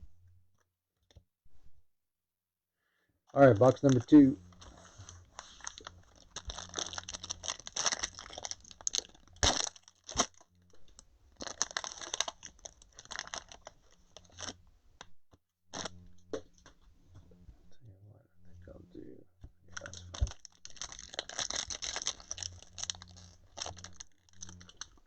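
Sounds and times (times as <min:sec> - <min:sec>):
plastic shrink-wrap tearing: 0:03.6 - 0:14.6, 0:15.7 - 0:16.0, 0:19.7 - 0:25.0.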